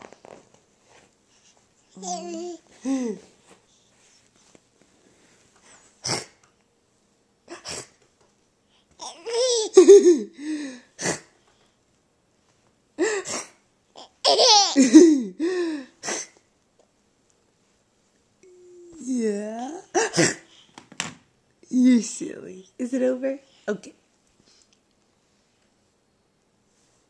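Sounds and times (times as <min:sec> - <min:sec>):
baby giggling: 0:09.1 - 0:10.3, 0:14.0 - 0:15.2.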